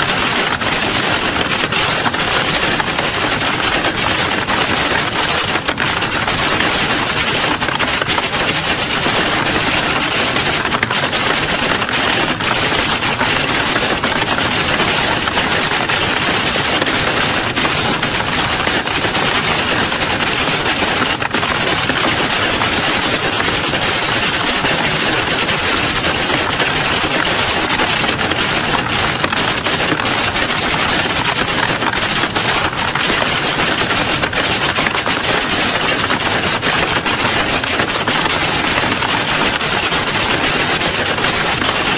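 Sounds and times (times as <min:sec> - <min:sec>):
many keyboards clattering: 0:00.0 - 0:41.9.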